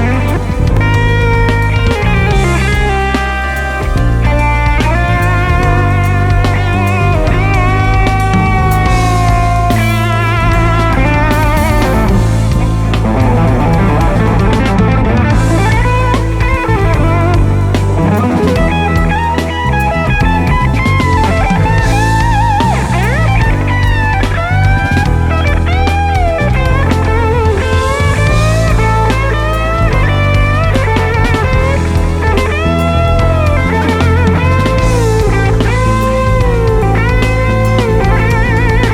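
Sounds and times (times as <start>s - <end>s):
electric guitar lead line: 0.0s - 38.9s
soul-funk band playing: 0.0s - 38.9s.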